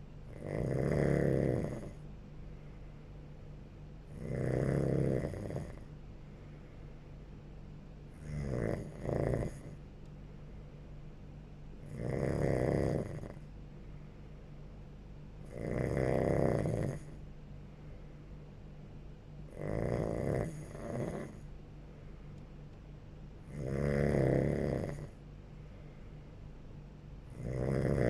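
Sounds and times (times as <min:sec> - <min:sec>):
steady low hum: 0:00.0 - 0:28.0
person snoring: 0:00.3 - 0:02.0, 0:04.1 - 0:05.9, 0:08.2 - 0:09.8, 0:11.9 - 0:13.4, 0:15.5 - 0:17.2, 0:19.5 - 0:21.4, 0:23.5 - 0:25.2, 0:27.3 - 0:28.0.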